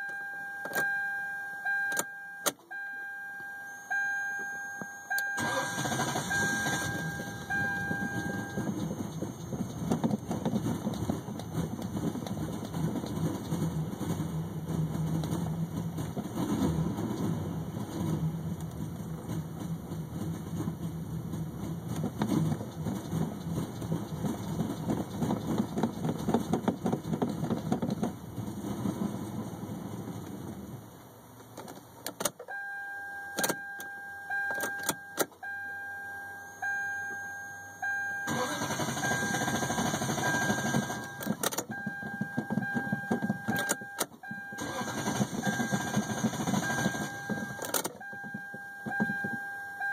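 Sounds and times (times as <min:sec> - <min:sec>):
electronic warning chime beeping: 0:00.0 - 0:09.8, 0:32.5 - 0:49.9
car engine cranking on starter: 0:05.1 - 0:32.6, 0:37.8 - 0:49.2.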